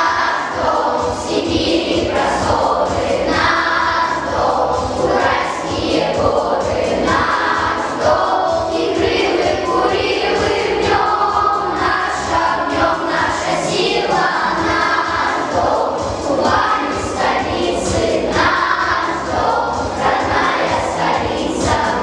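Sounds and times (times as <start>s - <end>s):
children's choir singing: 0.0s - 22.0s.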